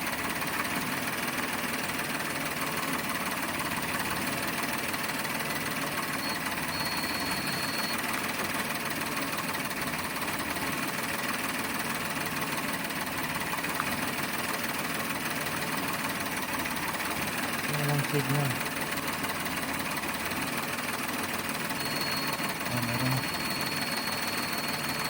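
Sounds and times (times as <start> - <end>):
car engine idling: 0.0 - 25.0
faint high tone: 21.8 - 25.0.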